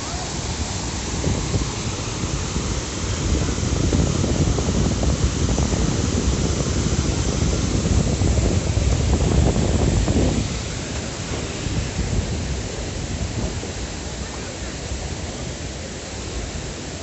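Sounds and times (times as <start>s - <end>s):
heavy low rumble: 0.0s - 14.2s
waterfall roaring: 0.0s - 17.0s.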